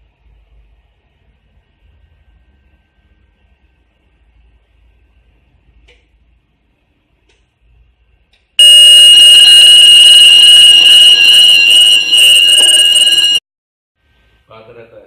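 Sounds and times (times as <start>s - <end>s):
fire alarm tone: 8.6s - 13.4s.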